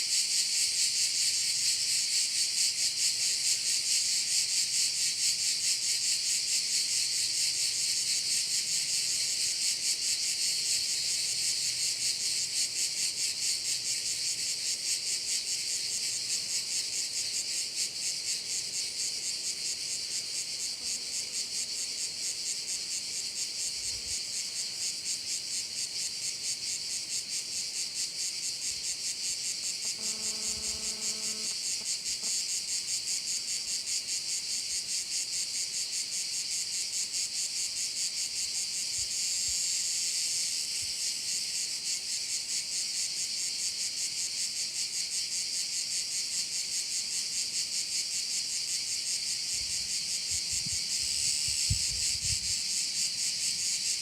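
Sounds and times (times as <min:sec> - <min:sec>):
cicadas buzzing: 0:00.0 - 0:54.0.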